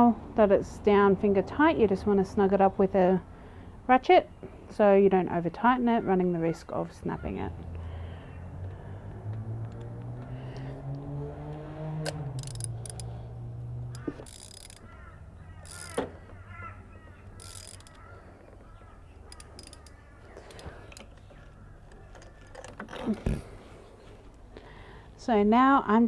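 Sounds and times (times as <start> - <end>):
socket ratchet clicking: 12.0 - 14.9, 15.6 - 16.1, 17.3 - 18.0, 19.3 - 21.1.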